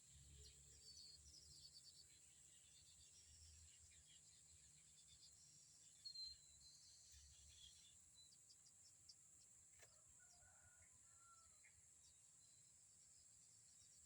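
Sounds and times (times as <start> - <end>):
bird chirps: 0.1 - 8.8.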